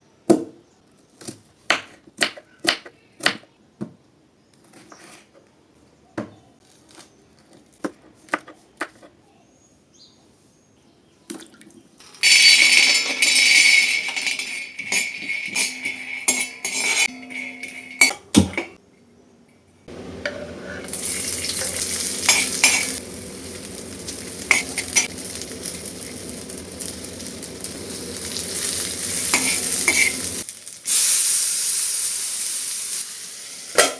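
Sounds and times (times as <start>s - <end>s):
utensils clinking against pan: 12.0s - 18.8s, 20.2s - 30.7s
food sizzling in hot oil: 19.9s - 33.9s.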